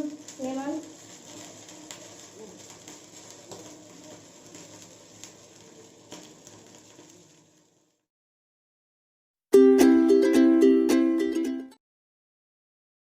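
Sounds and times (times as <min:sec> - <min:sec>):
faint kitchen background noise: 0:00.0 - 0:08.0.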